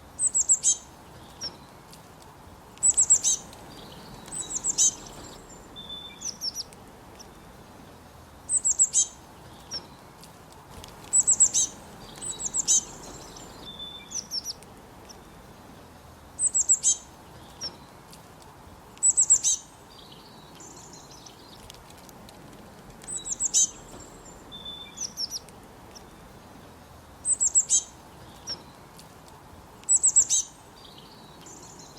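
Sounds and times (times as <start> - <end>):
high bird chirps: 0.2 - 1.8, 2.8 - 7.4, 8.5 - 10.0, 11.0 - 15.3, 16.4 - 18.0, 19.0 - 21.6, 23.0 - 26.2, 27.2 - 28.8, 29.8 - 31.9
softer lower bird calls: 0.2 - 1.8, 2.8 - 7.8, 8.5 - 10.0, 11.0 - 15.3, 16.4 - 18.0, 19.0 - 21.6, 23.1 - 28.8, 29.8 - 31.9.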